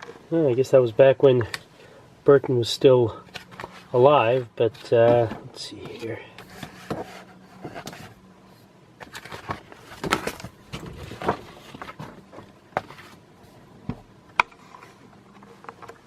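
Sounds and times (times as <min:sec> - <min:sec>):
paper pages rustling: 0:03.3 - 0:08.2.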